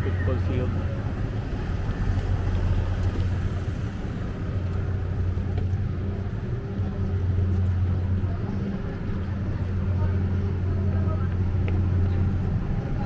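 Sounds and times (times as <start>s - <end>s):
low engine hum: 0.0s - 13.0s.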